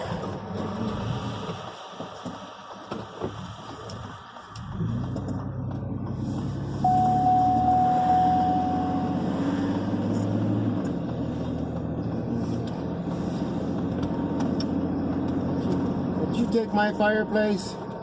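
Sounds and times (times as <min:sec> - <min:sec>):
vehicle engine running: 0:00.1 - 0:18.0
high chime or beep: 0:06.8 - 0:09.4.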